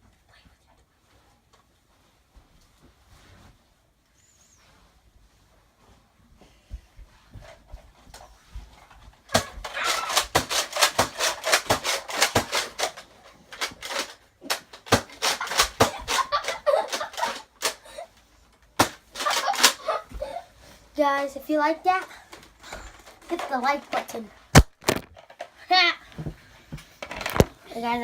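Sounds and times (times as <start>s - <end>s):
toy blaster firing darts: 9.3s - 13.0s, 13.6s - 17.8s.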